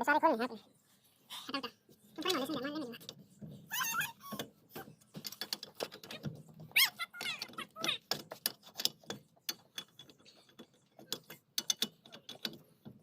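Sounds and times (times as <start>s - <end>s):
short squeaks: 3.6s - 4.6s, 5.8s - 8.1s
wrench clicking and rattling: 5.2s - 12.6s.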